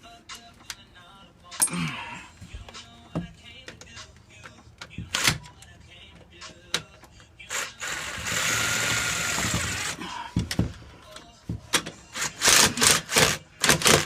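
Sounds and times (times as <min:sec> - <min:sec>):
loud drill bursts: 0:07.5 - 0:10.0
power drill driving screw: 0:07.5 - 0:10.0, 0:12.2 - 0:14.0.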